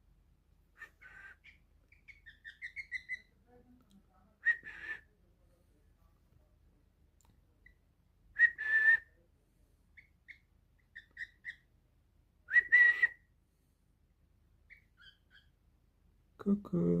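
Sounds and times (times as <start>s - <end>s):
soft parrot chirps: 0.8s - 3.3s, 4.4s - 5.1s, 10.0s - 11.7s, 14.6s - 15.6s
parrot whistling: 12.5s - 13.2s.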